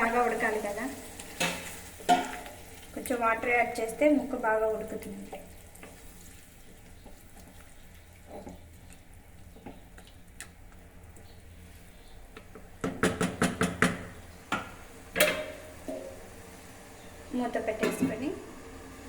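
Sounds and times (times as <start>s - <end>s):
spoon tapping pot: 1.4s - 2.6s
spoon stirring in pot: 5.3s - 16.2s.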